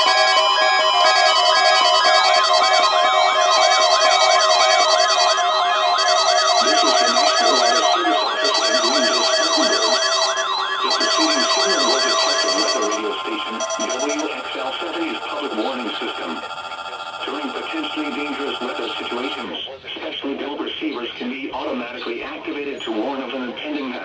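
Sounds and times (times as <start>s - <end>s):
steady tones: 0.0s - 16.5s
warbling siren-like alarm: 0.0s - 19.4s.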